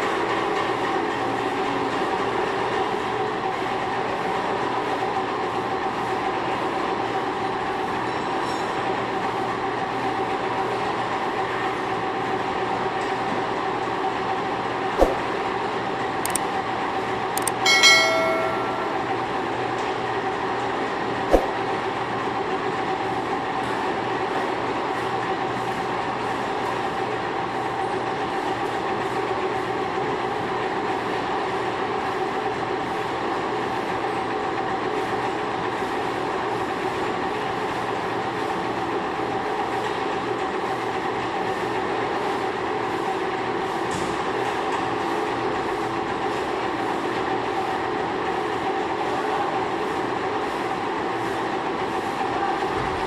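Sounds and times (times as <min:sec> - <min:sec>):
metallic clang ringing: 0:17.4 - 0:19.4.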